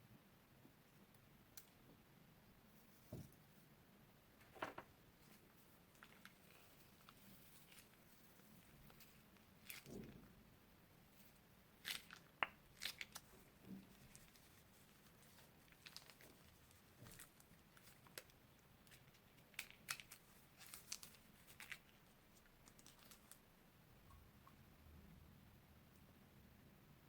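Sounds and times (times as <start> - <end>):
crunchy slime crackling: 11.2 - 23.4.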